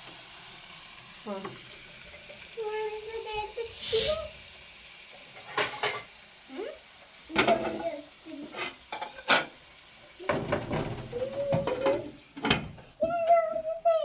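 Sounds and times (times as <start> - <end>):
metal utensil scraping pot: 3.7 - 4.4.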